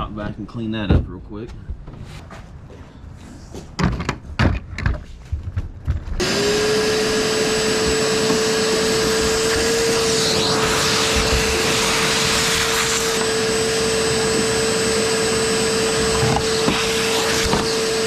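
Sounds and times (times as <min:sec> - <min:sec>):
shop vac whining: 0:06.2 - 0:18.0.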